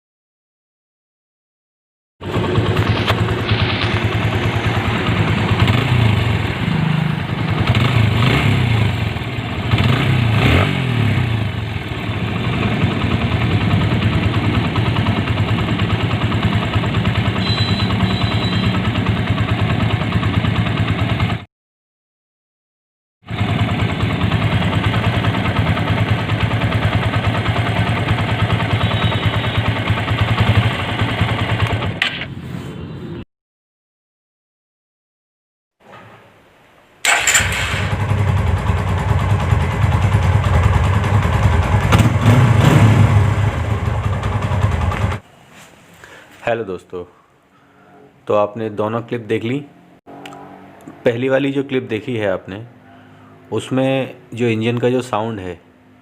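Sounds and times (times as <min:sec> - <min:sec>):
motorcycle engine idling: 0:02.2 - 0:21.4, 0:23.3 - 0:32.0, 0:37.0 - 0:45.2
rough motorcycle engine revving: 0:02.2 - 0:21.4, 0:23.3 - 0:32.0, 0:37.0 - 0:45.2, 0:49.7 - 0:51.6.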